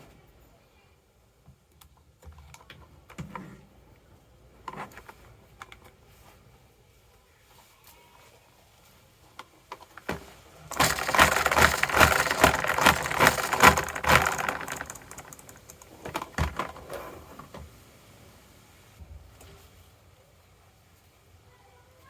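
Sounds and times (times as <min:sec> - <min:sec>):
marbles clattering down a track: 0:10.7 - 0:15.7.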